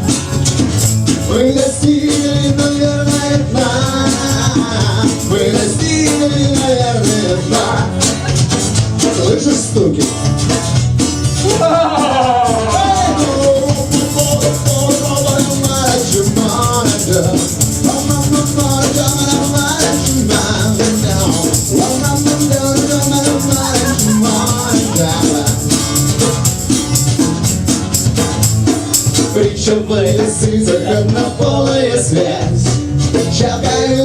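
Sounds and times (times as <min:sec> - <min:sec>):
percussion rhythm: 0:00.0 - 0:34.0
melodic lead line: 0:11.6 - 0:28.6.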